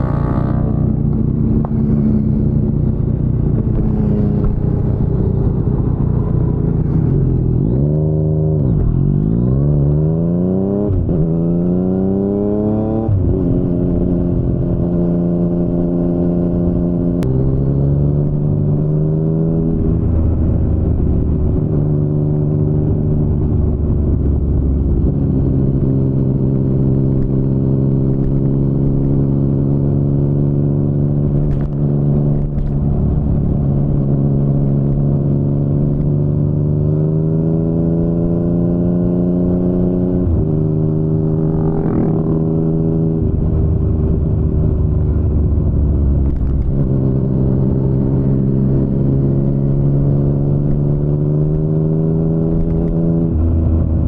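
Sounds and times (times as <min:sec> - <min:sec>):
motorcycle engine revving: 0:00.0 - 0:54.0.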